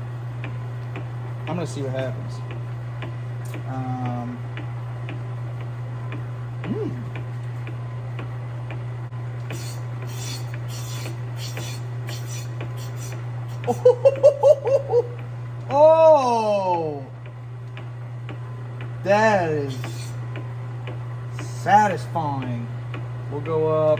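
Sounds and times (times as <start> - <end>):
metal lathe motor hum: 0.0 - 23.9
tool scraping spinning metal: 9.5 - 13.8, 19.4 - 20.2.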